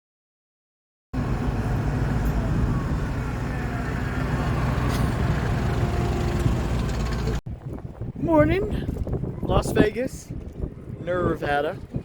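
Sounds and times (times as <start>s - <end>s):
truck engine and road noise: 1.2s - 8.2s.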